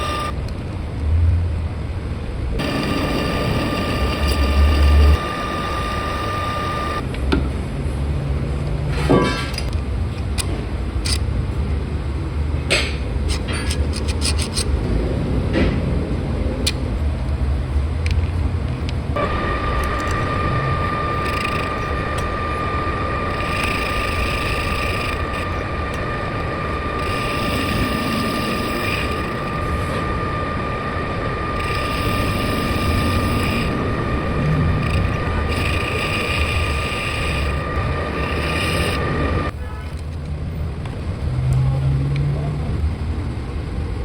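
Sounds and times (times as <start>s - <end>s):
metal lathe running: 0.0s - 0.4s, 2.6s - 7.0s, 19.2s - 39.5s
high-pitched whine: 0.0s - 1.0s, 1.6s - 7.1s, 19.1s - 39.7s.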